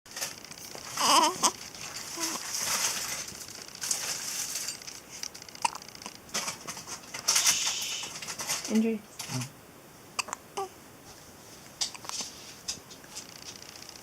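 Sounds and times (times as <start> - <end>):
crinkly rustling hiss: 0.1 - 10.1, 11.0 - 14.0
person hiccuping: 5.6 - 5.9, 10.2 - 10.7.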